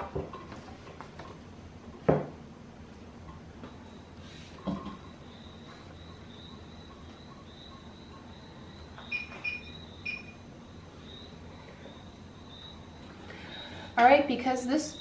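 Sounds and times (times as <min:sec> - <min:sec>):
electronic cricket chirping: 0:03.8 - 0:13.8, 0:14.8 - 0:15.0.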